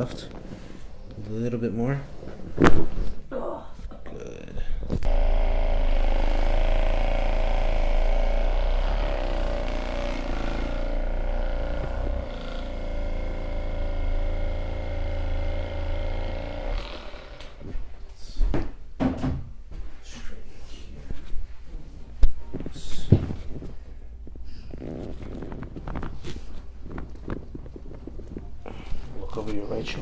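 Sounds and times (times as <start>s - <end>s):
electric massage tool humming: 5.0s - 18.0s.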